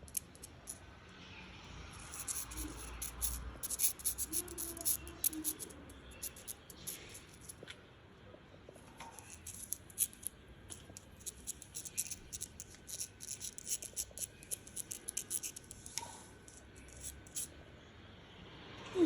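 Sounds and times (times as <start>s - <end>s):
cat crunching dry food: 2.0s - 7.6s, 9.2s - 16.0s.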